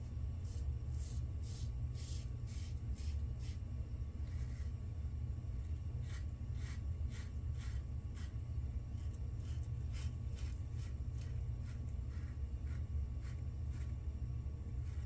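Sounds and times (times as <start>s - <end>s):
steady low hum: 0.0s - 15.0s
razor scraping stubble: 6.0s - 14.0s.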